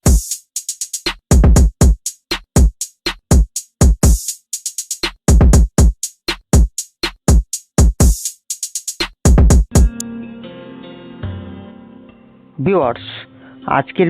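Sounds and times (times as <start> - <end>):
electronic music with drum-machine beat: 0.0 - 10.0.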